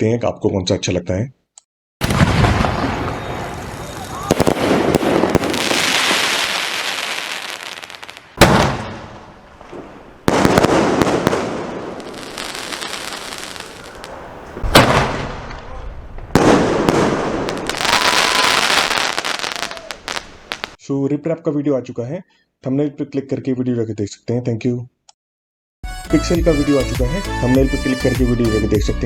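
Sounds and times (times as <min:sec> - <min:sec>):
firework bangs: 0:02.0 - 0:20.8
firework crackling: 0:02.0 - 0:20.8.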